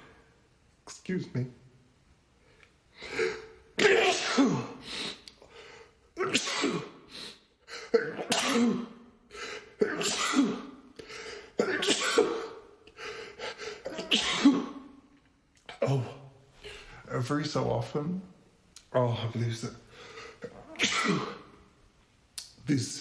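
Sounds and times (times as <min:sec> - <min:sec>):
man sneezing: 0:03.0 - 0:05.2, 0:06.2 - 0:14.9, 0:20.4 - 0:21.6.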